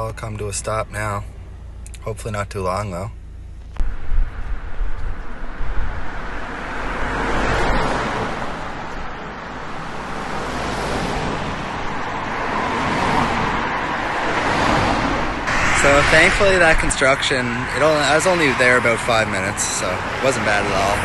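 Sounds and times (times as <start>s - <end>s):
car road and wind noise: 0.0s - 21.0s
low buffeting thumps: 3.7s - 7.0s.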